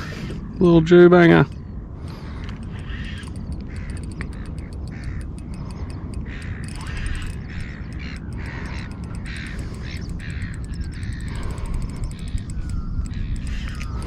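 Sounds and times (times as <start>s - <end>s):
steady low rumble: 0.0s - 14.0s
crow cawing: 2.7s - 4.3s, 6.2s - 11.6s.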